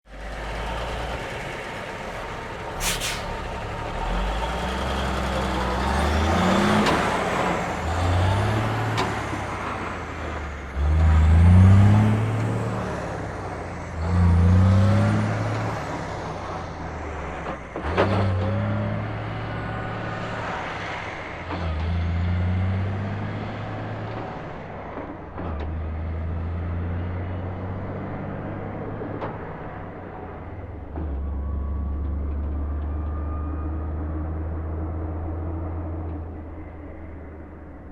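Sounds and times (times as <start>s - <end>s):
truck diesel engine revving: 0.2s - 17.2s
air brake hiss: 2.7s - 3.5s, 5.8s - 6.4s.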